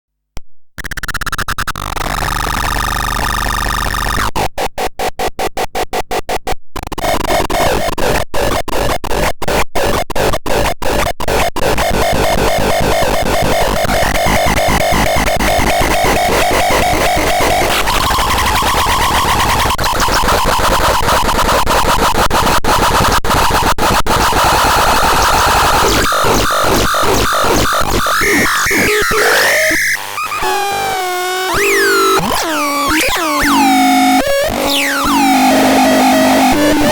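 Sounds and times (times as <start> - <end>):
harsh noisy synthesizer: 0.8 - 4.9, 5.5 - 36.9
high held synth tone: 28.7 - 36.9.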